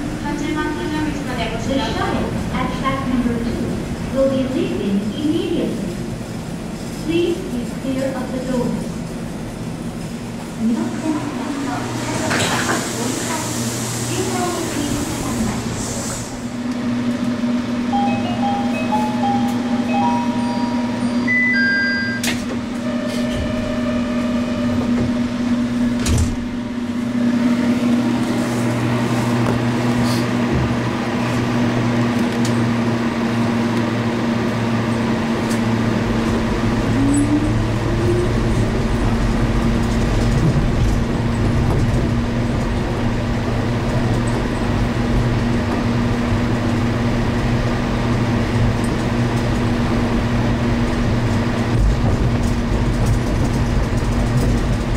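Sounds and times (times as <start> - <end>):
train electric hum: 0.0 - 54.9
train low rumble: 0.0 - 54.9.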